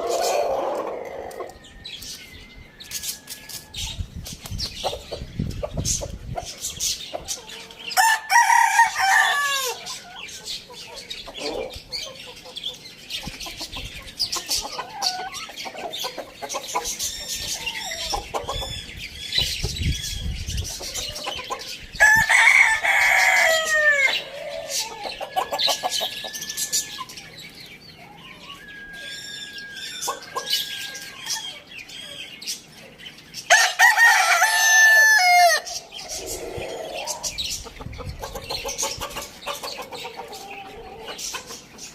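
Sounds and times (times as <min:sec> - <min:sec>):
roosters crowing: 0:00.0 - 0:04.2, 0:06.8 - 0:12.4, 0:14.2 - 0:19.0, 0:20.0 - 0:32.5, 0:33.4 - 0:37.6
chickens clucking and chirping: 0:00.0 - 0:41.9.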